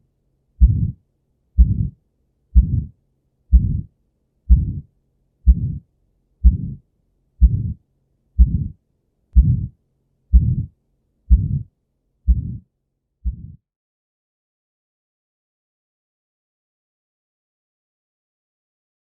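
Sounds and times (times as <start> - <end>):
heartbeat thuds: 0.6 - 1.0, 1.6 - 2.0, 2.6 - 2.9, 3.5 - 3.9, 4.5 - 4.9, 5.5 - 5.8, 6.4 - 6.8, 7.4 - 7.8, 8.4 - 8.8, 9.4 - 9.7, 10.3 - 10.7, 11.3 - 11.7, 12.3 - 12.6, 13.2 - 13.6
rough heart murmur: 0.6 - 1.0, 1.6 - 1.9, 2.6 - 2.9, 3.5 - 3.9, 4.5 - 4.8, 5.5 - 5.8, 6.4 - 6.8, 7.4 - 7.8, 8.4 - 8.8, 9.4 - 9.7, 10.3 - 10.7, 11.3 - 11.6, 13.3 - 13.6.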